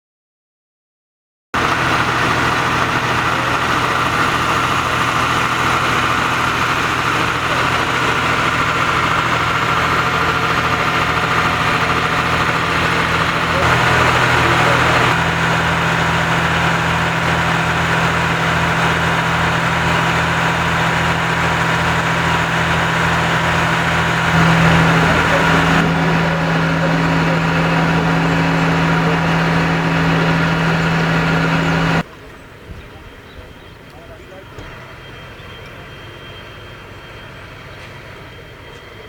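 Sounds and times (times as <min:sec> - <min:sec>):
heavy engine idling: 0:01.6 - 0:39.0
higher tone: 0:21.6 - 0:32.0.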